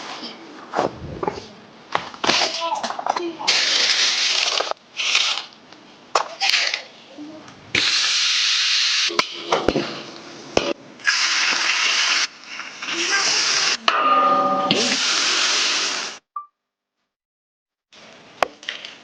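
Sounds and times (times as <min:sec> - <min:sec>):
hot oil sizzling: 0:07.7 - 0:09.2, 0:11.0 - 0:13.8, 0:14.8 - 0:16.2.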